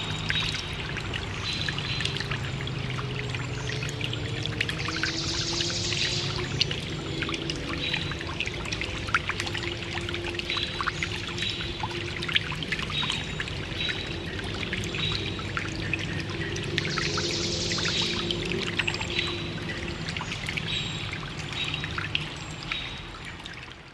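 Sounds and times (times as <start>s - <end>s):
birds chirping: 0.0s - 23.3s
stream trickling over stones: 0.0s - 23.9s.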